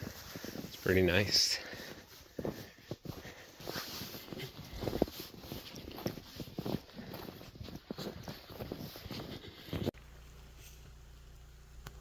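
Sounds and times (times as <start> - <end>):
footsteps on packed snow: 0.0 - 10.5.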